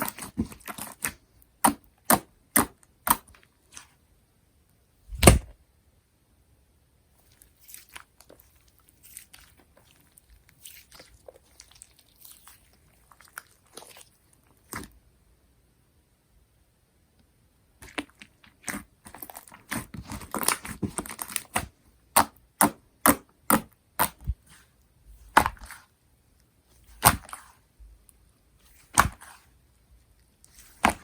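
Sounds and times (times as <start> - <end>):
slime crackling: 7.2 - 14.9, 17.8 - 24.7.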